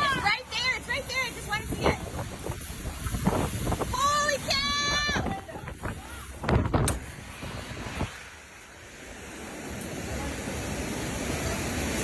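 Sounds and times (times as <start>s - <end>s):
wind buffeting microphone: 0.0s - 8.5s
surf: 0.0s - 12.0s.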